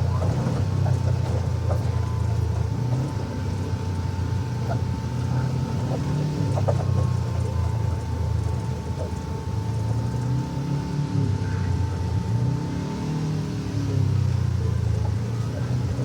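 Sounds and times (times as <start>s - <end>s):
vehicle knocks and rattles: 0.0s - 10.9s
vehicle engine running: 0.0s - 16.0s.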